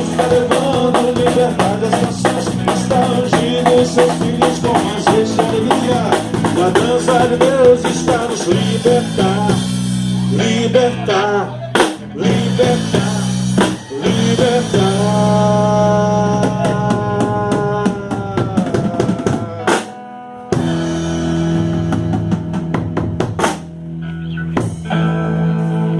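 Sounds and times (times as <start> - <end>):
drum kit fills and crashes: 0.0 - 25.9
electric guitar and bass chords: 0.0 - 25.9.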